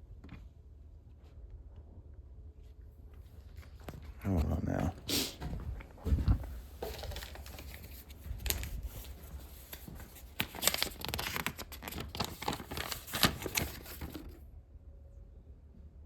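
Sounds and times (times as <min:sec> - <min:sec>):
low steady hum: 0:00.0 - 0:16.0
rustling and scraping: 0:02.6 - 0:14.4.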